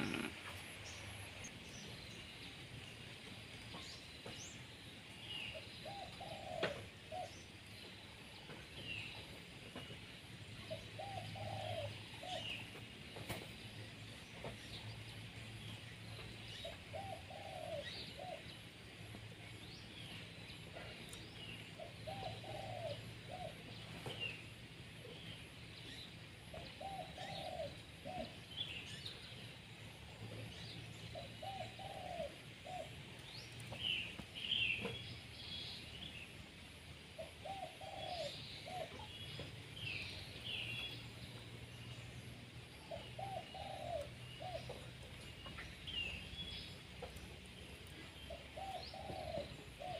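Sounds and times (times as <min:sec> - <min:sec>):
dove cooing: 0:00.0 - 0:01.3, 0:05.8 - 0:07.3, 0:10.7 - 0:12.6, 0:16.9 - 0:18.5, 0:21.8 - 0:24.2, 0:26.5 - 0:28.4, 0:31.1 - 0:33.9, 0:37.2 - 0:39.1, 0:42.9 - 0:46.2, 0:47.9 - 0:49.9
small birds chirping: 0:00.0 - 0:13.6, 0:14.2 - 0:49.9.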